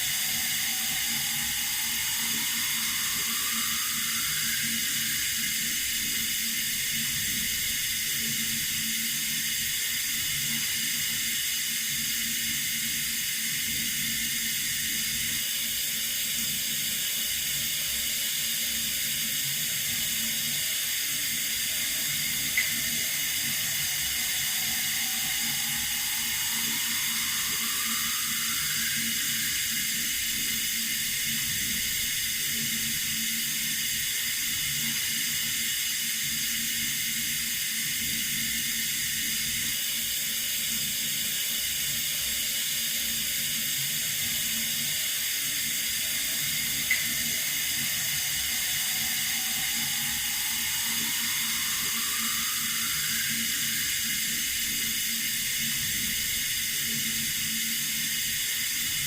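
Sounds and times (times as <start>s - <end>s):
water running from a tap: 19.3s - 39.7s, 43.4s - 59.0s.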